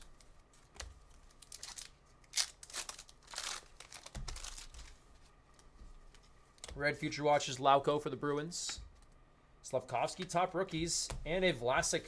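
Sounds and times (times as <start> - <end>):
wrapper crinkling and tearing: 1.1 - 5.0.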